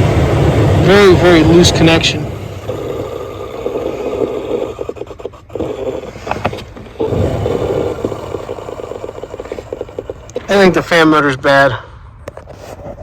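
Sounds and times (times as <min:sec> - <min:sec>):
blower motor humming: 0:00.0 - 0:11.0
scraping and clicking: 0:02.6 - 0:10.5.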